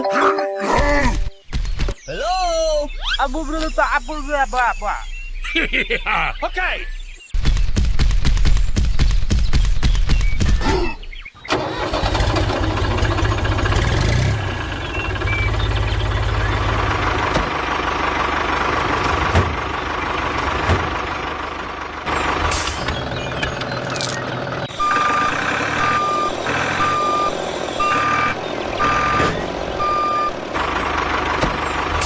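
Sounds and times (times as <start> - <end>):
tractor engine starting: 11.4 - 32.0.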